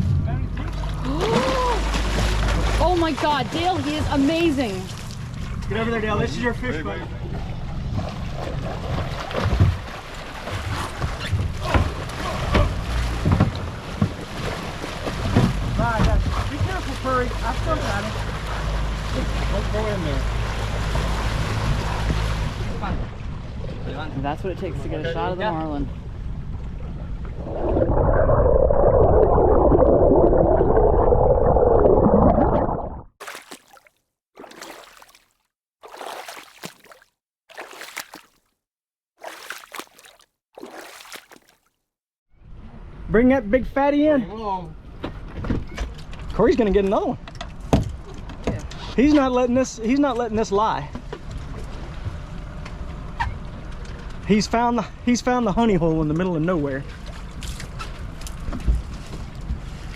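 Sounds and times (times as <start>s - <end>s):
water noise: 0.0s - 24.0s, 25.6s - 41.8s
boat engine rumble: 0.0s - 33.5s, 44.5s - 59.9s
thumps or splashes: 0.6s - 5.2s, 7.9s - 23.1s, 29.1s - 38.6s, 39.2s - 41.7s
muffled underwater rushing: 26.7s - 35.2s
wind on microphone: 27.2s - 32.9s.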